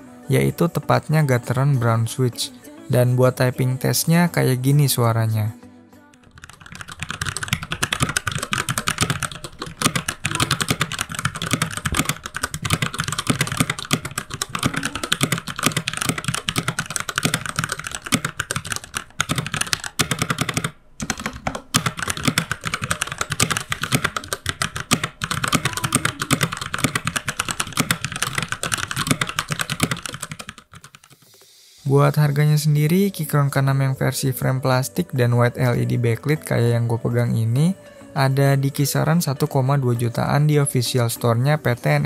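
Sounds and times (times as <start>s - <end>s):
mechanical keyboard typing: 6.1s - 31.4s.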